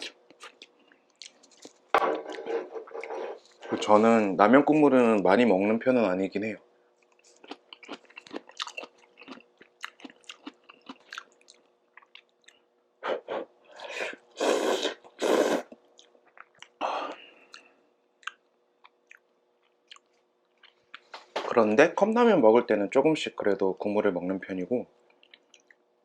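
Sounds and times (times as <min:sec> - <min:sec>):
soft chewing: 0:00.0 - 0:02.4, 0:06.9 - 0:12.8, 0:14.9 - 0:21.2, 0:25.0 - 0:25.9
noodles being slurped: 0:14.3 - 0:15.8.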